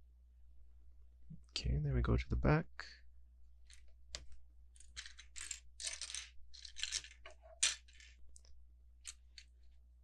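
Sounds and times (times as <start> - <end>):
plastic bricks clattering: 4.8 - 8.2.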